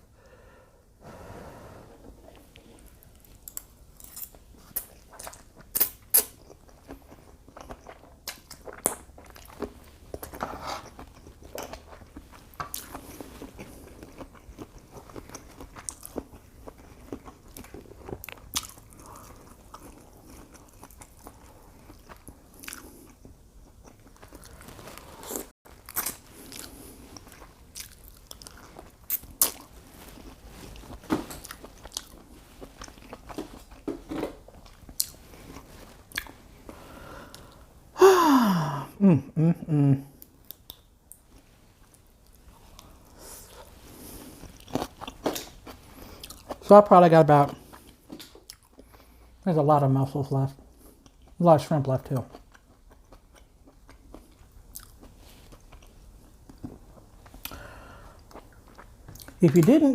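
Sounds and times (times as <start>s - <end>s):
person chewing and biting: 3.1s - 36.5s, 40.4s - 46.6s, 52.3s - 59.4s.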